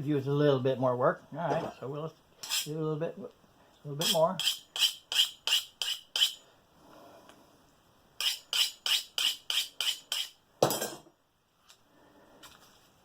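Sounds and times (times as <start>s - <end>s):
scissor blades scraping on spoon: 4.0s - 6.4s, 8.2s - 10.3s.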